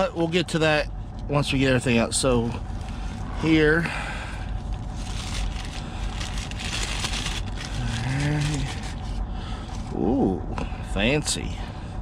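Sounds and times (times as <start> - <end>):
low hum: 0.0 - 12.0
packaging rustling: 4.7 - 9.2
man murmuring: 7.7 - 8.8.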